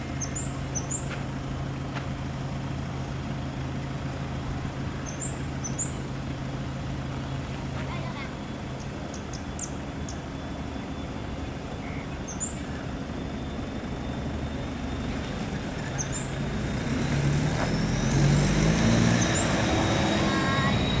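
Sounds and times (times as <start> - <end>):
high engine whine: 0.0 - 21.0
jet engines running: 0.0 - 21.0.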